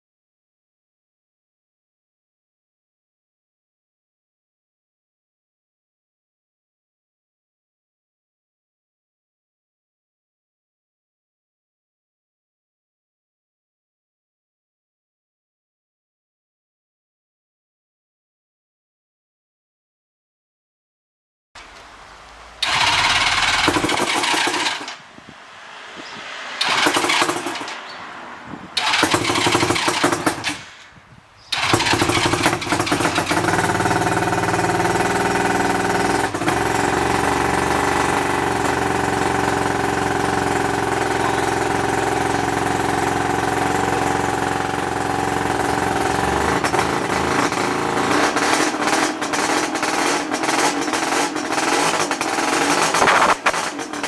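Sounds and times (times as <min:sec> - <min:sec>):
two-stroke engine starting and running: 0:21.6 - 0:54.0.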